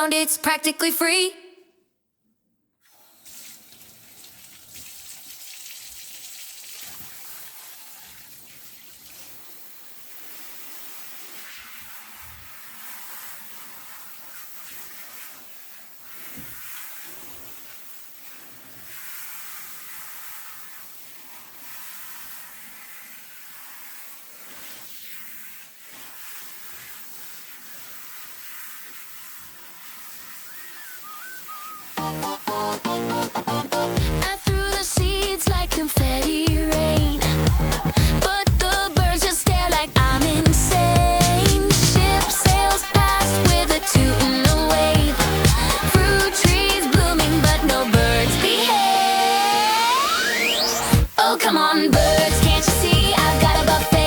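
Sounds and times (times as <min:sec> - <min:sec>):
water running from a tap: 0:02.9 - 0:10.2, 0:34.0 - 0:48.4.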